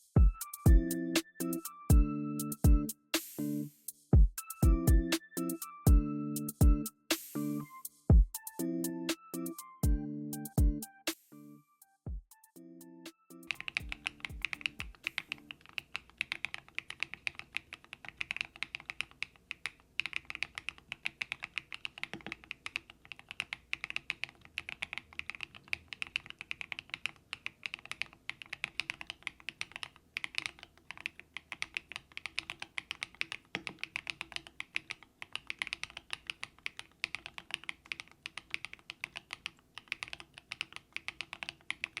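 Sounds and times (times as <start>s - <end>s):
mechanical keyboard typing: 13.3s - 42.0s.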